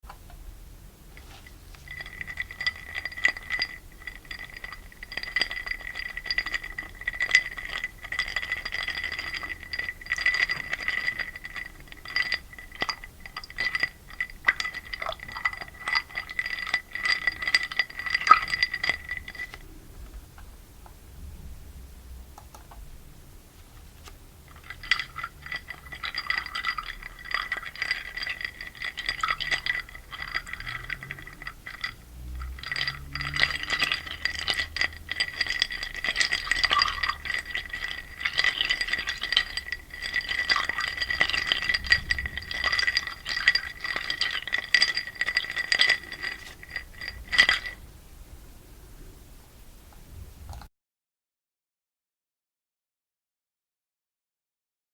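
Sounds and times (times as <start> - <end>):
ice cubes clinking in glass: 1.2 - 19.6, 24.0 - 47.9.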